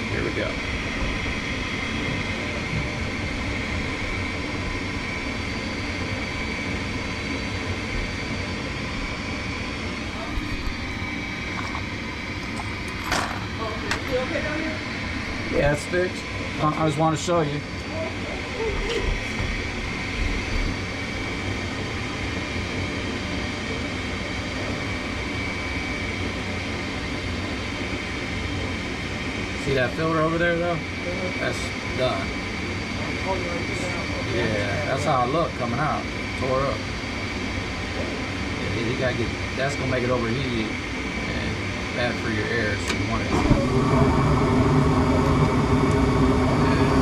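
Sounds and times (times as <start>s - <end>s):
low hum: 0.0s - 25.7s, 40.6s - 47.0s
gas furnace burner rushing: 7.8s - 23.0s, 41.4s - 47.0s.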